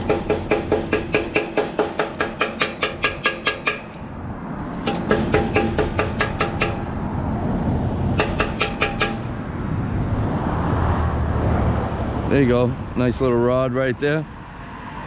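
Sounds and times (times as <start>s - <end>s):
metal rod clanking on hard surface: 0.0s - 4.1s, 4.8s - 7.0s, 8.2s - 9.4s
road traffic rumbling: 0.0s - 15.0s.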